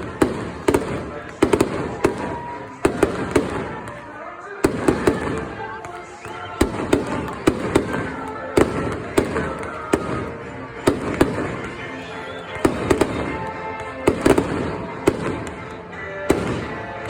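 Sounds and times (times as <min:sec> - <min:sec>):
background music: 0:00.0 - 0:17.0
fireworks bangs: 0:00.0 - 0:17.0.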